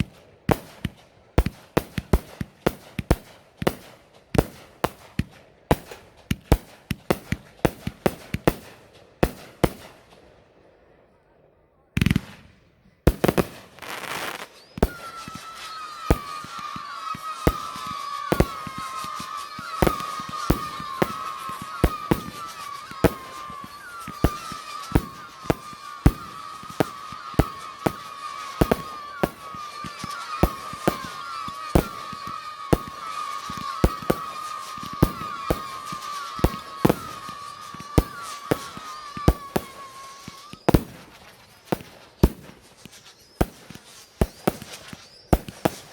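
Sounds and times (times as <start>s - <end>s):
fireworks bangs: 0.0s - 10.3s, 12.0s - 45.9s
wavering firework whistle: 13.2s - 45.9s.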